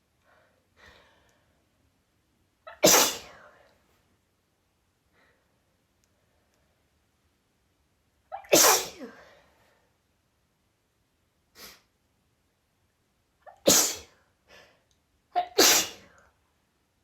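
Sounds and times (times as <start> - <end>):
woman sneezing: 2.7 - 3.4, 8.3 - 9.3, 13.5 - 14.1, 15.4 - 16.1.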